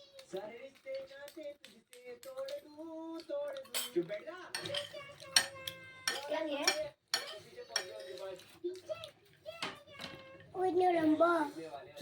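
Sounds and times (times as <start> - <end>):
cutlery and dishes clinking: 0.0 - 10.5
faint tv voices: 0.0 - 12.0.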